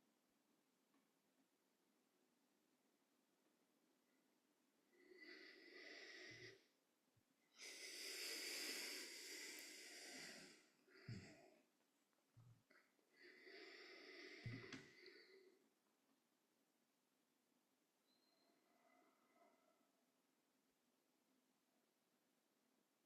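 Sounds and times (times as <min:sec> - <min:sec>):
person breathing deeply: 0:04.9 - 0:06.7, 0:07.5 - 0:11.7, 0:13.1 - 0:15.6.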